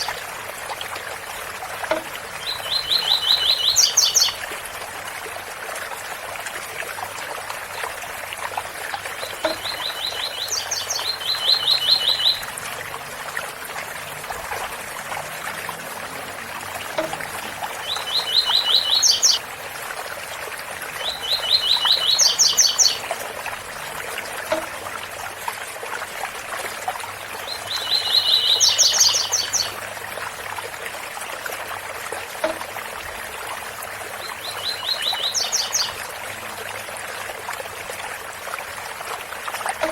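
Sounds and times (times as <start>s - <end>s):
bird singing: 2.4s - 4.4s, 9.2s - 12.6s, 16.8s - 19.4s, 21.0s - 23.1s, 27.4s - 29.8s, 34.2s - 36.0s
waterfall rushing: 9.2s - 19.7s.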